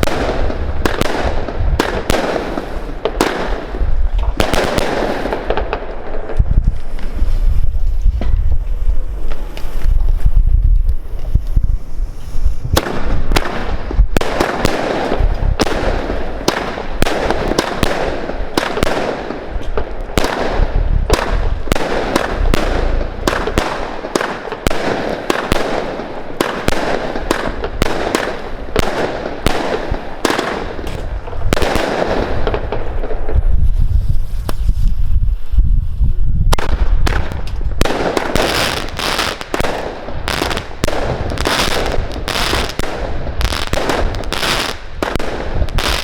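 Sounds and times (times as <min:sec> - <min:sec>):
wind rumble on microphone: 0:00.0 - 0:46.0
firework cake shots and bursts: 0:08.2 - 0:33.7, 0:36.5 - 0:46.0.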